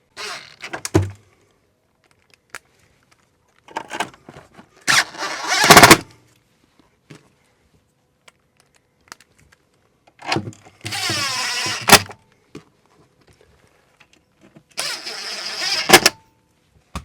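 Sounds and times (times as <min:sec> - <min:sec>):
power drill motor whine: 0:00.2 - 0:00.7, 0:04.9 - 0:06.0, 0:10.8 - 0:12.1, 0:14.8 - 0:16.2.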